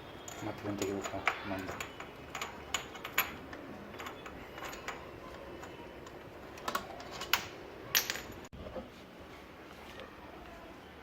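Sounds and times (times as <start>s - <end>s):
hand tools clicking and clinking: 0.2s - 8.5s.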